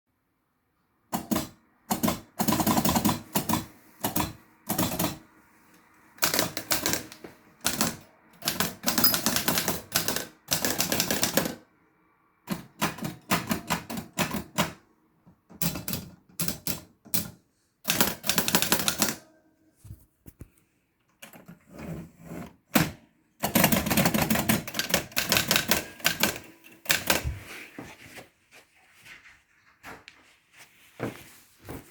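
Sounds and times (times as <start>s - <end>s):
typewriter keys clacking: 6.2s - 11.6s, 17.9s - 19.2s, 23.4s - 27.2s.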